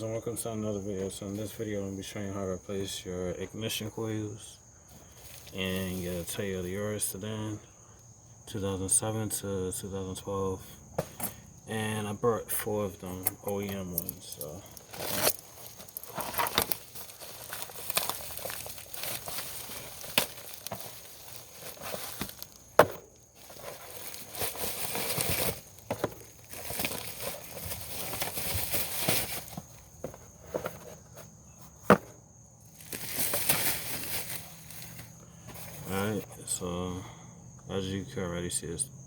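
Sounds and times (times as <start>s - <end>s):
packaging crinkling: 13.6s - 30.0s, 32.7s - 35.9s.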